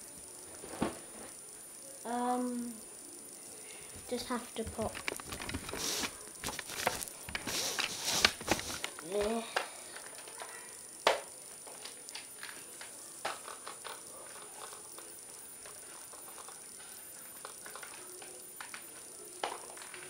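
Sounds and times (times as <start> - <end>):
plastic toy blasters clicking: 4.8 - 16.6, 17.4 - 20.0.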